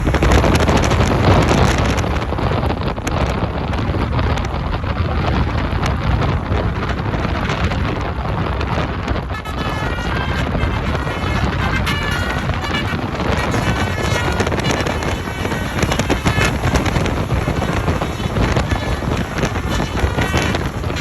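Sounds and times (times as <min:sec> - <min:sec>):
highway traffic rushing: 0:00.0 - 0:21.0
wind buffeting microphone: 0:00.0 - 0:21.0
bus musical horn tune: 0:09.1 - 0:21.0.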